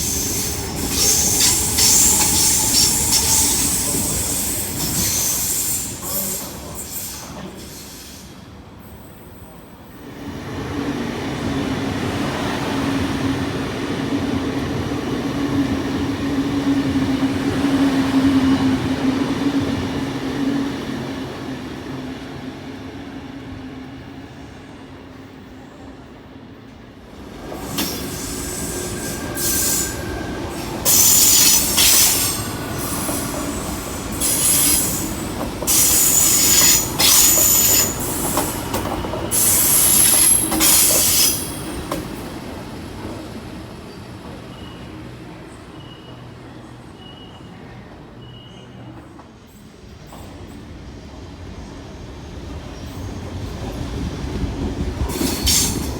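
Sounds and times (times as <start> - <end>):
electric train humming: 0.0 - 6.3
train wheels squealing on rails: 0.0 - 21.4, 27.4 - 55.9.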